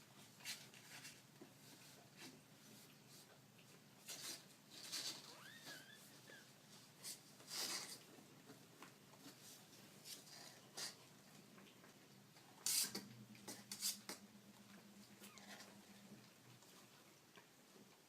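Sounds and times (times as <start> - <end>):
kittens scuffling: 0.0 - 18.0.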